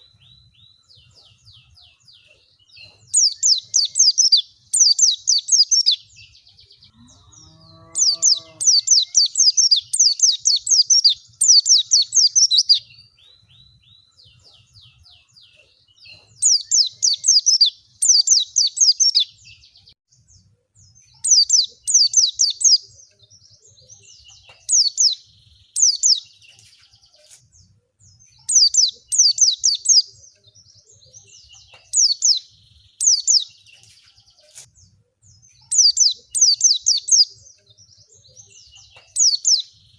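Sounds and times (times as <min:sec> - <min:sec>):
bird chirping song: 0:00.0 - 0:39.9.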